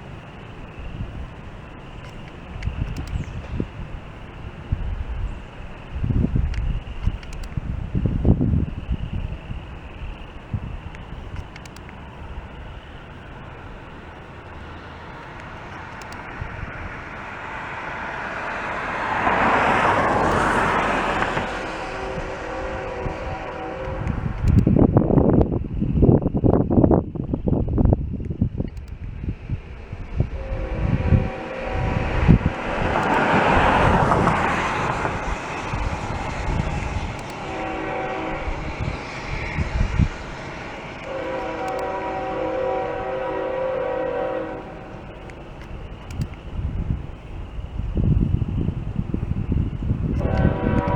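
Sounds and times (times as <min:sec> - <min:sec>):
wind buffeting microphone: 0:00.0 - 0:50.9
road vehicle passing: 0:14.0 - 0:24.6, 0:29.2 - 0:45.9
faint steady chord of tones: 0:29.5 - 0:47.8.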